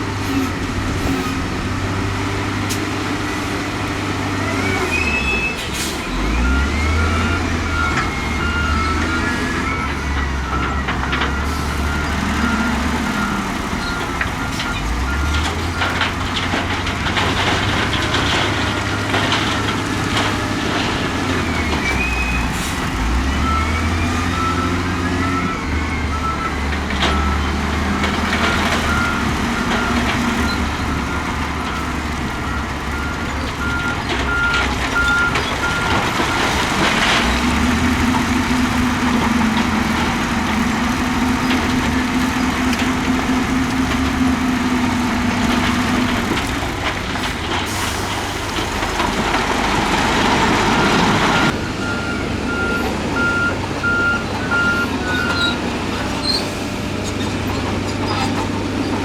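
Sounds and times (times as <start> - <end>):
diesel engine under load: 0.0 - 59.0
reversing alarm beeping: 51.3 - 55.6.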